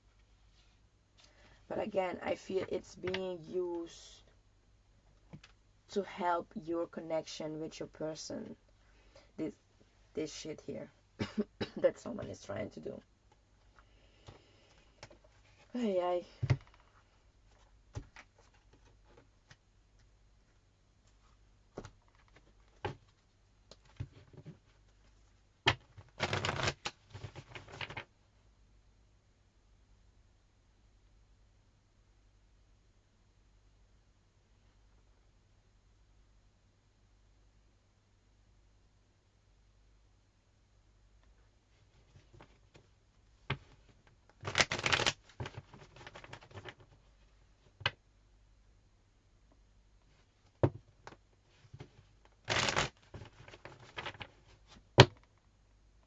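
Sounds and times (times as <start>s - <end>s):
cards shuffling: 25.7s - 28.0s, 44.5s - 46.7s, 52.5s - 54.4s
card rustles: 44.4s - 46.9s, 52.5s - 54.7s.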